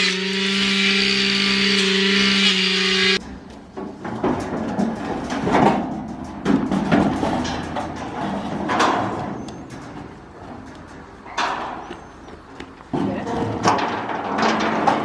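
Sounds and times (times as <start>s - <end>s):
knocks and clattering thuds: 3.3s - 15.0s.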